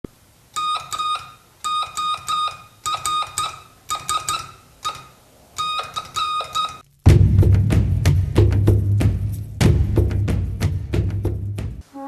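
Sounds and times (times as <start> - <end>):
morse code beeps: 0.6 - 6.8.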